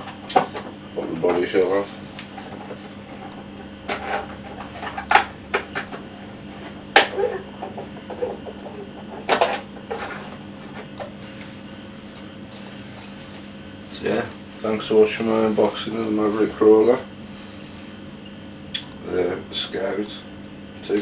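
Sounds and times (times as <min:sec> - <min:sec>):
steady low hum: 0:00.0 - 0:21.0
objects knocking and rattling: 0:02.3 - 0:11.1.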